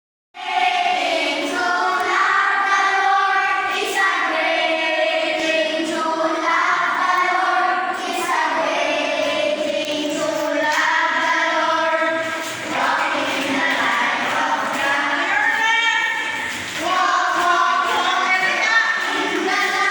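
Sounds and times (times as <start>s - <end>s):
loud karaoke singing: 8.3s - 19.9s.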